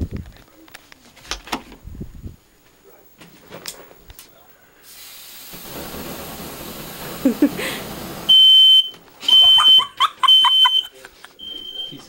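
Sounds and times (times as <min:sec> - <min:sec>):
steady hiss: 0:01.7 - 0:09.2
smoke alarm beeps: 0:08.3 - 0:12.0.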